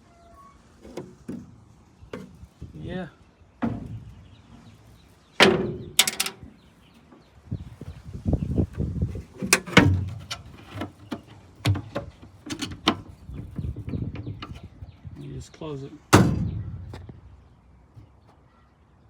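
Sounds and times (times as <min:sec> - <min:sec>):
small knocks and rattles: 0:03.6 - 0:07.3, 0:08.6 - 0:15.3, 0:16.1 - 0:18.4
metal toolbox clanking: 0:05.4 - 0:06.5, 0:09.2 - 0:13.2, 0:16.1 - 0:17.3
loud ringing metal bangs: 0:16.2 - 0:17.3.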